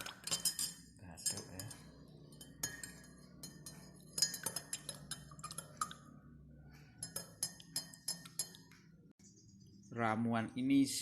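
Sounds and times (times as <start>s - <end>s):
spoon clinking against glass: 0.0s - 6.1s, 6.8s - 8.7s.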